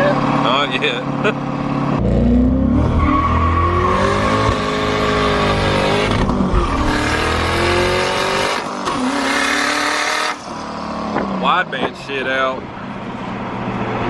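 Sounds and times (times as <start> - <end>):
car engine revving at full throttle: 0.0 - 14.0
loud turbo whine: 1.5 - 11.2.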